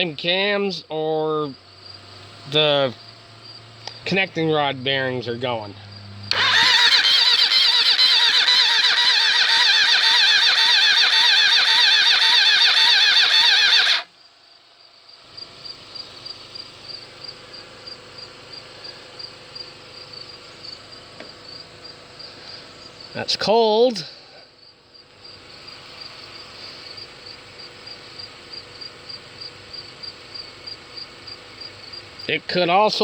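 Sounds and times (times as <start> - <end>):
crickets chirping: 0.0 - 33.0
electric starter cranking motorcycle engine: 5.2 - 14.1.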